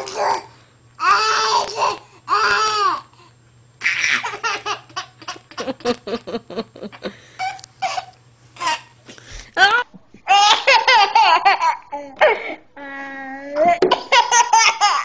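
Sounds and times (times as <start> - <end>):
baby laughing: 3.8 - 6.1, 7.4 - 8.9, 9.6 - 12.5, 13.6 - 15.0.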